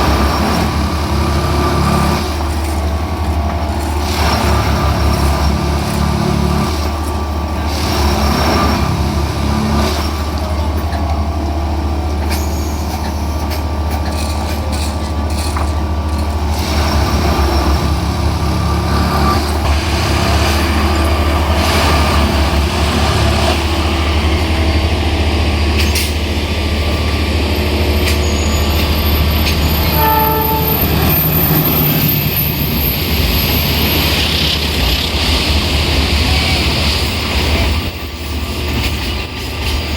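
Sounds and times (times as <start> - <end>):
diesel engine humming: 0.0 - 38.4
short pitched tone: 29.8 - 32.1.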